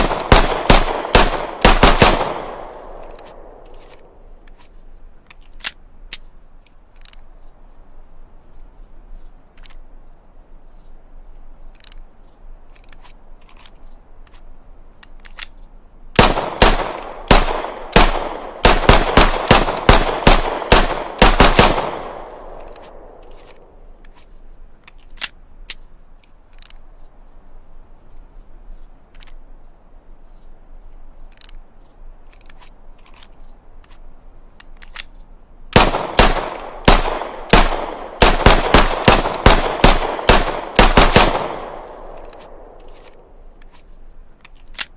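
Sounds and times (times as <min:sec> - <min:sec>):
pistol shots ringing out: 0:00.0 - 0:04.0, 0:16.2 - 0:23.3, 0:35.8 - 0:42.9.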